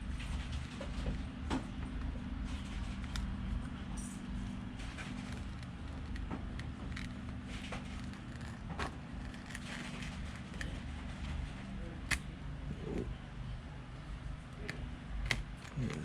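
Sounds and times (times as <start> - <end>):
low mechanical hum: 0.0 - 16.0
small tool clicking and scraping: 2.5 - 12.3.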